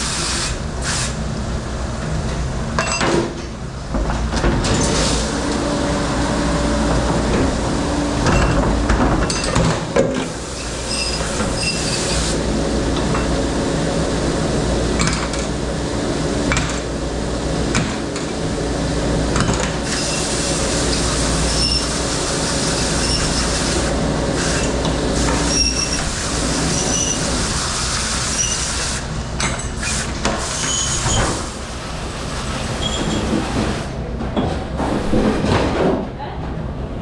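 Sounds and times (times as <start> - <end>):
steady machine drone: 3.5 - 29.6
short high squeaks: 10.9 - 12.2, 25.4 - 26.1, 30.6 - 31.5, 32.8 - 33.3.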